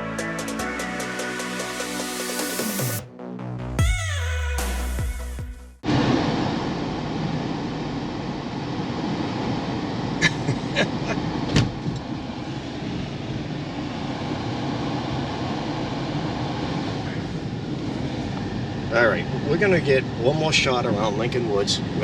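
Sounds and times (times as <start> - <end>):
music: 0.0 - 5.8
car road and engine noise: 5.8 - 22.0.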